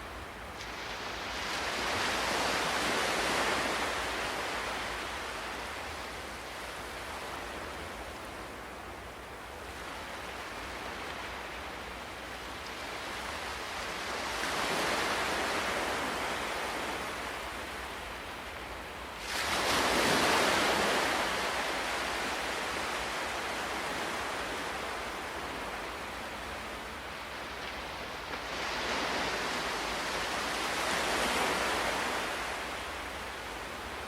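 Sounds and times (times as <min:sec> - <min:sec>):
ocean waves breaking on shore: 0:00.0 - 0:34.0.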